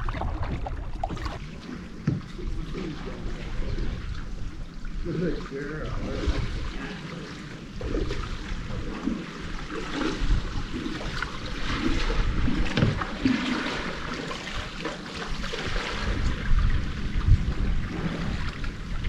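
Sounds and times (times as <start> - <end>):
water splashing around kayak: 0.0 - 19.0
wind rumbling on microphone: 0.0 - 19.0.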